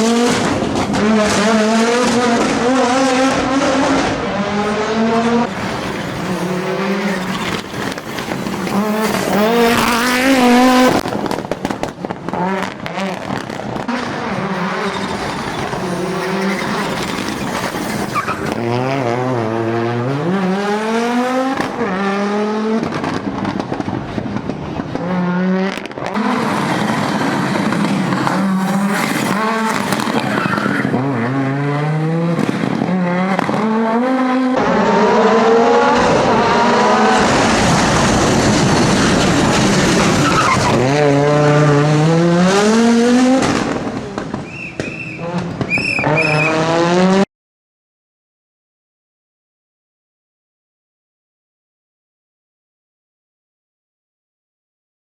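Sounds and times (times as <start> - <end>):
loud rushing noise: 0.0 - 33.8, 34.5 - 44.4
rally car engine accelerating: 0.0 - 44.5, 45.1 - 47.3
tyres squealing and skidding: 4.5 - 11.9, 12.6 - 22.0, 26.1 - 31.4, 35.0 - 42.2, 44.3 - 46.8.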